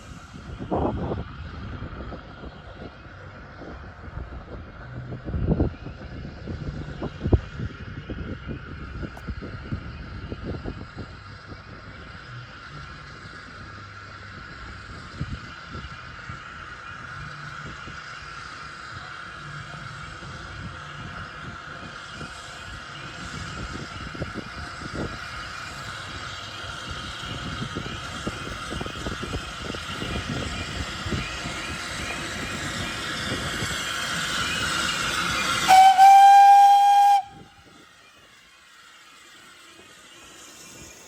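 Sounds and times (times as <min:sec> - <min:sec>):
steam hiss: 0:00.0 - 0:41.0
steam locomotive running: 0:00.0 - 0:41.0
train whistle blast: 0:35.6 - 0:37.7.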